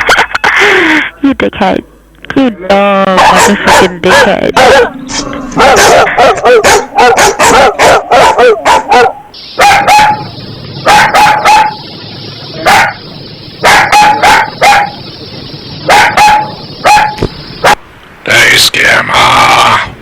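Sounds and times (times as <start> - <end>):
dogs barking: 3.1 - 11.9, 12.6 - 15.1, 15.8 - 17.8
steady hiss: 9.2 - 10.9, 11.6 - 20.0.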